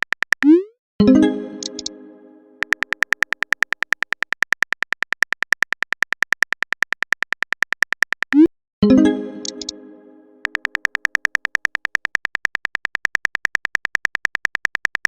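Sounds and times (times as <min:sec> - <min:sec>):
keyboard typing clicks: 0:00.0 - 0:00.7, 0:01.4 - 0:08.5, 0:09.3 - 0:15.0
pitched alert tone: 0:00.4 - 0:02.8, 0:08.4 - 0:10.6.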